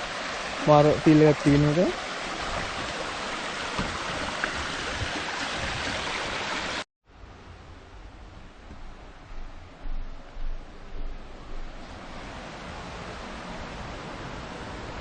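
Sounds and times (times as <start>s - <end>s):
stream rushing over stones: 0.0s - 6.9s, 11.7s - 15.0s.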